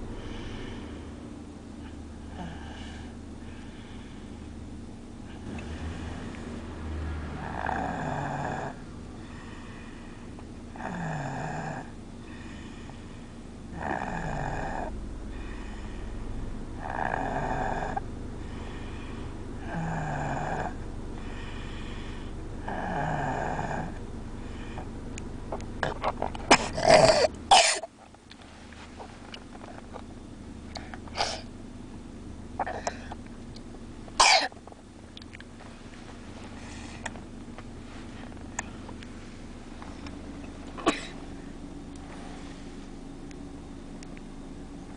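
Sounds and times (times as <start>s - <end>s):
toddler snoring: 2.3s - 3.1s, 5.3s - 9.8s, 10.7s - 12.8s, 13.7s - 16.1s, 16.8s - 24.0s
child coughing: 26.5s - 27.9s, 34.2s - 34.6s, 40.8s - 41.2s.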